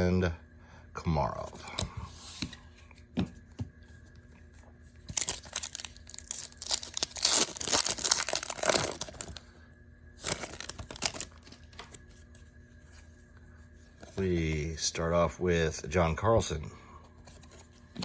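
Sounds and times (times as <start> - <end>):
wrapper tearing and crinkling: 5.1 - 9.4, 10.2 - 11.9.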